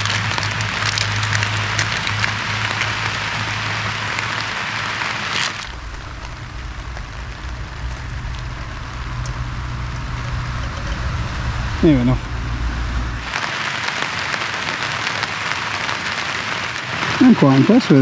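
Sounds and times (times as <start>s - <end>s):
low rumble: 0.0s - 13.4s
raindrop ticks: 0.0s - 13.5s
rain hissing on a tarp: 0.0s - 18.0s.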